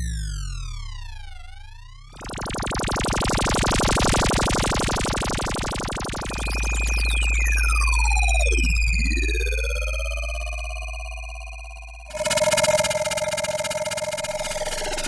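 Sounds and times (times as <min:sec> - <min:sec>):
dense buzzing synth tone: 0:02.1 - 0:15.0
siren-like sweeping synth tone: 0:02.1 - 0:15.0
deep steady drone: 0:04.7 - 0:15.0
steady high tone: 0:08.5 - 0:15.0.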